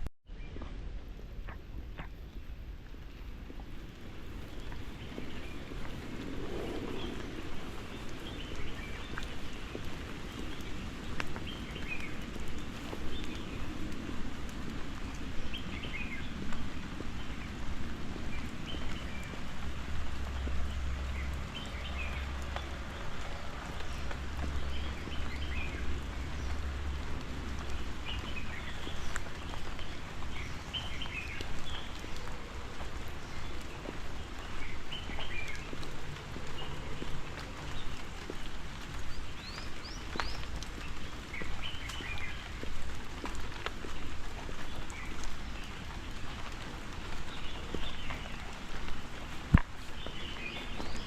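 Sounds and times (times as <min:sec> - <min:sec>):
low rumble: 0:00.3 - 0:09.7
rain falling: 0:00.8 - 0:51.0.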